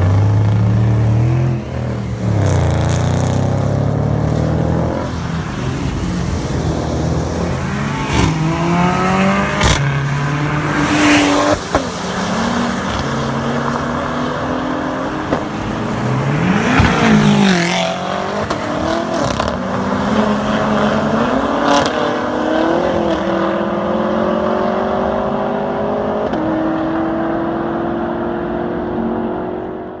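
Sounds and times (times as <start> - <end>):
exhaust cracks: 0.0 - 22.0
sports cars driving past: 0.0 - 30.0.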